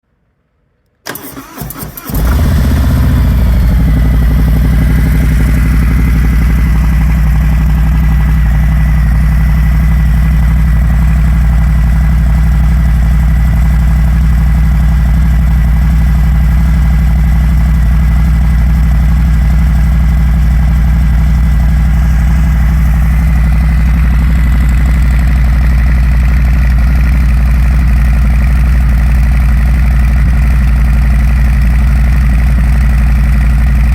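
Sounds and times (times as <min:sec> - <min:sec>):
motorcycle starter cranking: 0:01.1 - 0:04.2
motorcycle engine deep idle: 0:02.1 - 0:33.9.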